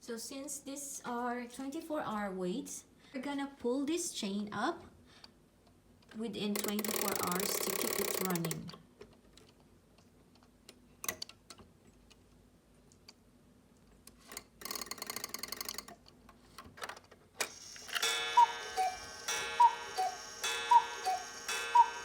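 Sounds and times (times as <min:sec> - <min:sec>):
cuckoo clock calling: 0:06.6 - 0:08.6, 0:17.5 - 0:22.0.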